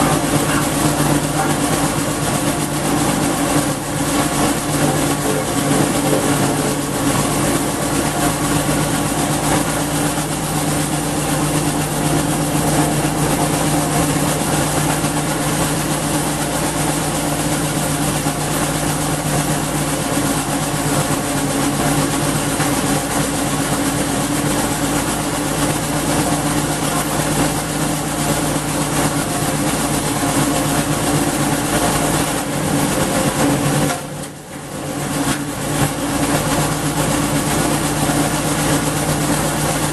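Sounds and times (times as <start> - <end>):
wood chipper engine running: 0.0 - 39.9.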